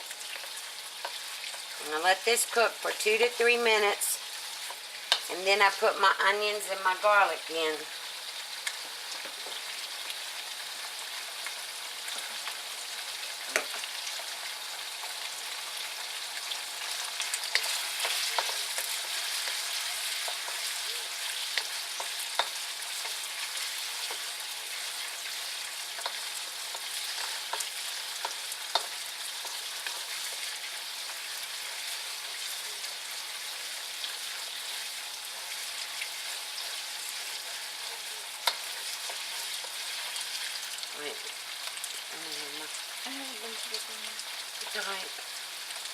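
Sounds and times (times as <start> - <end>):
chicken sizzling in a wok: 0.0 - 45.9.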